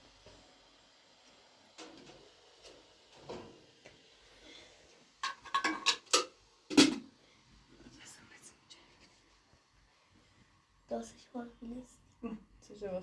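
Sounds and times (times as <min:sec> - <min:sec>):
kitchenware clinking and clattering: 0:05.2 - 0:07.1.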